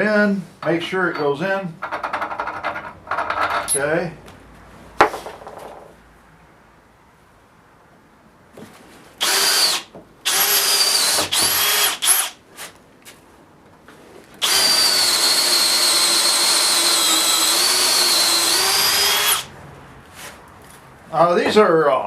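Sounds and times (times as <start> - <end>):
drill boring into wood: 9.2 - 12.4, 14.4 - 19.5.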